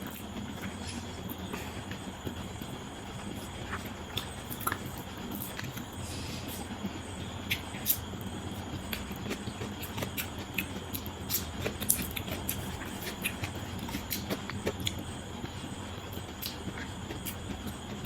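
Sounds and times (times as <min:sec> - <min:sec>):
person chewing food: 0:00.0 - 0:06.8, 0:07.4 - 0:18.0
low background hum: 0:00.0 - 0:18.0.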